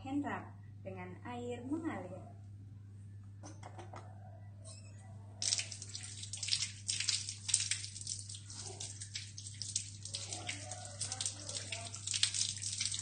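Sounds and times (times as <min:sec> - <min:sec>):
hands being washed: 0:05.4 - 0:13.0
water running from a tap: 0:05.4 - 0:13.0.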